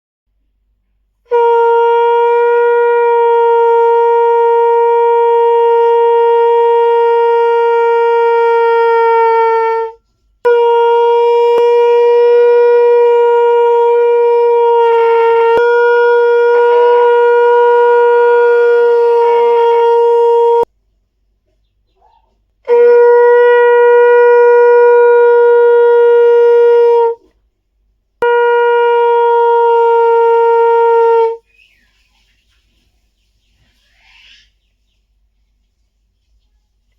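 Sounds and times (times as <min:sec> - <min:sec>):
conch shell blasts: 0:01.2 - 0:20.7, 0:22.6 - 0:27.3, 0:28.2 - 0:31.4.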